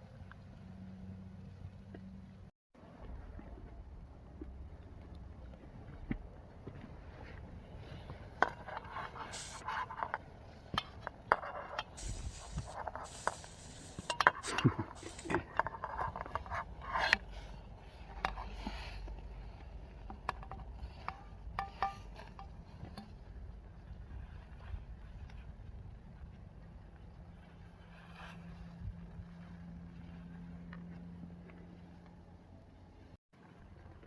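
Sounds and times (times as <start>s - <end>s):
rustling: 7.1s - 10.1s, 11.8s - 16.2s.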